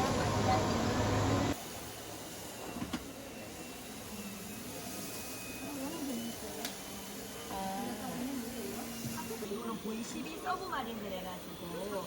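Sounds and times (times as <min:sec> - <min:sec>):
faint voices: 0:02.6 - 0:12.0.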